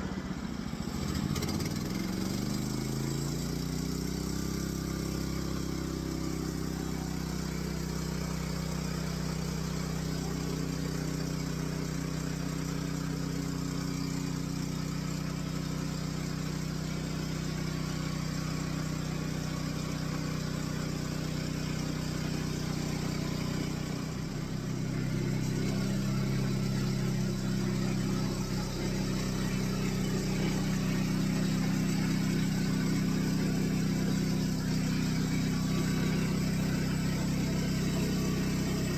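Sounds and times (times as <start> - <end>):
sawmill engine running: 0.0 - 38.9.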